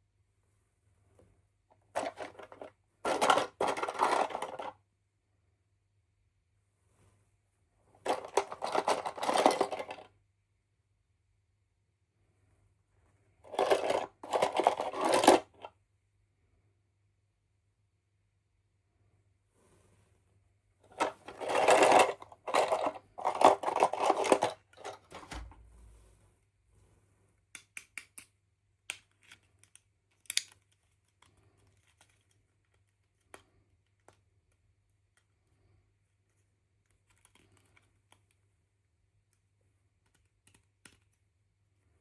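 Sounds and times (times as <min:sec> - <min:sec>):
plastic packaging rustling: 0:08.0 - 0:10.1, 0:13.5 - 0:15.7, 0:20.9 - 0:25.4.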